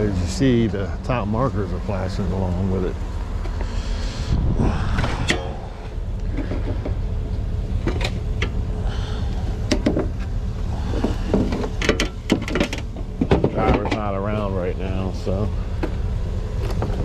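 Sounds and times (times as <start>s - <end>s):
vehicle engine idling: 0.0s - 17.0s
sharp clicks and knocks: 6.2s - 8.6s, 9.6s - 10.3s, 11.0s - 14.2s, 16.6s - 17.0s.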